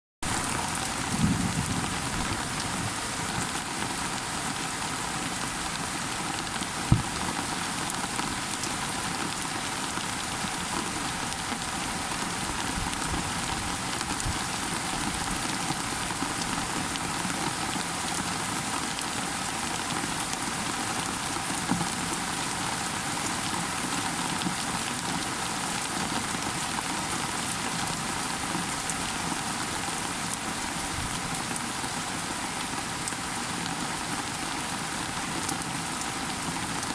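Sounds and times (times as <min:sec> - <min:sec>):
rain pattering: 0:00.2 - 0:36.9
sharp knock: 0:06.9 - 0:07.2.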